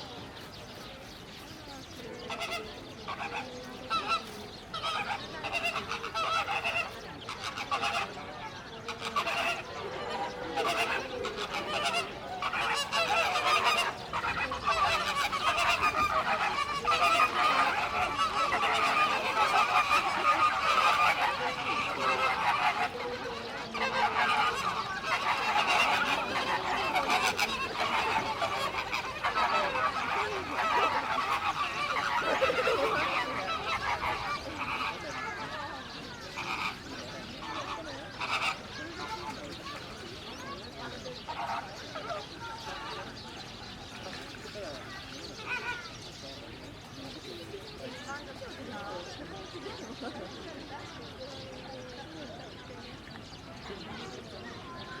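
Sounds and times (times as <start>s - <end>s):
birds honking: 2.3s - 8.2s, 8.8s - 40.5s.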